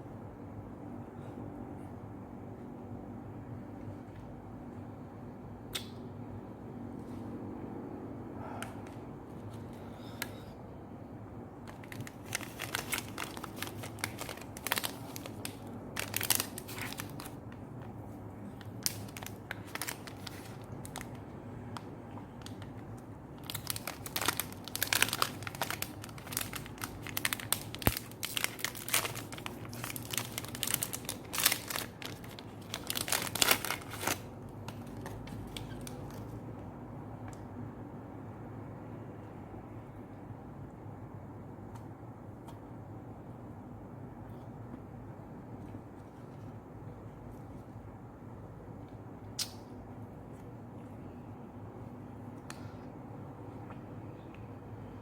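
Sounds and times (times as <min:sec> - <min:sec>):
packaging crinkling and tearing: 0:11.6 - 0:17.4, 0:18.5 - 0:21.2, 0:21.8 - 0:36.4.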